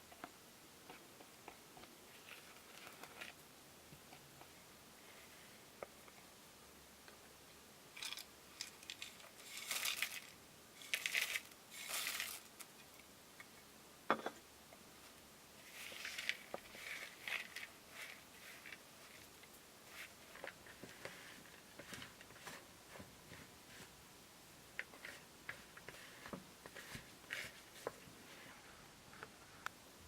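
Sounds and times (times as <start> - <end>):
utensils scraping and rustling: 8.0 - 13.0, 15.6 - 23.9, 24.8 - 28.6.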